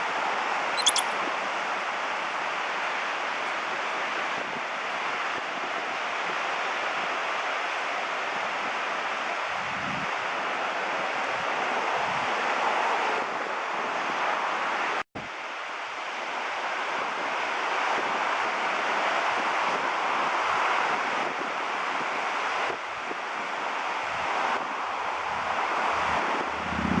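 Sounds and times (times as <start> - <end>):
ocean surf on beach: 15.7 - 27.0
wind buffeting microphone: 25.2 - 27.0.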